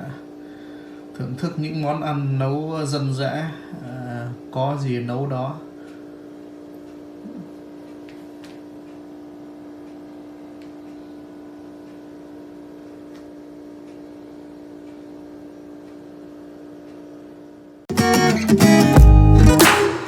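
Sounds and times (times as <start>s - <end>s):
steady machine hum: 0.0s - 20.0s
strummed acoustic guitar music: 17.9s - 20.0s.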